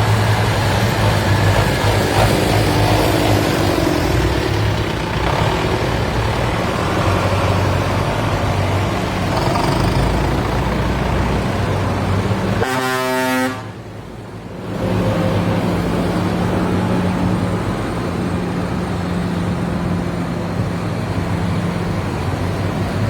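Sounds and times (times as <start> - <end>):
tractor engines running: 0.0 - 23.0
tractor horn blast: 12.6 - 13.8.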